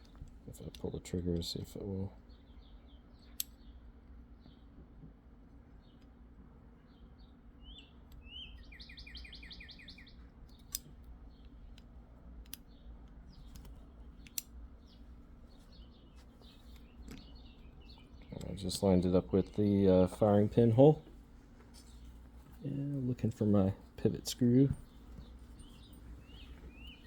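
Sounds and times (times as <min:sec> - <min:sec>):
faint bird chirps: 0:06.8 - 0:11.6, 0:21.8 - 0:27.0
bird trill: 0:07.6 - 0:10.3, 0:24.8 - 0:27.0.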